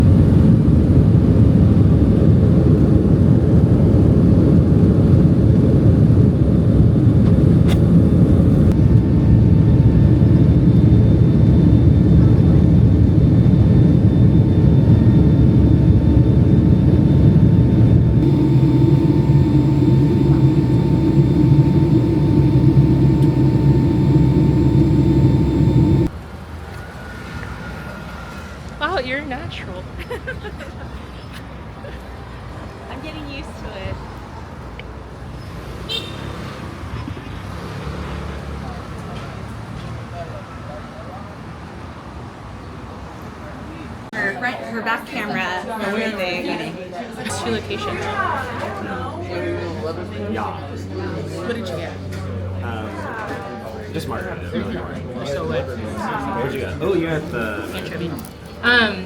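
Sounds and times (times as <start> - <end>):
faint steady whine: 13.6 - 26.2.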